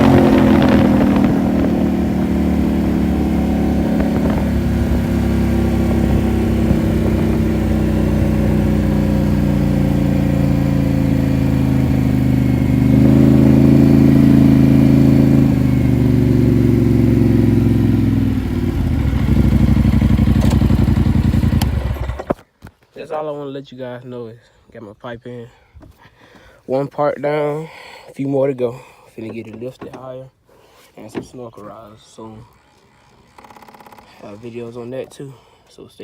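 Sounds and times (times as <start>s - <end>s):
atv engine revving: 0.0s - 22.4s, 32.5s - 34.8s.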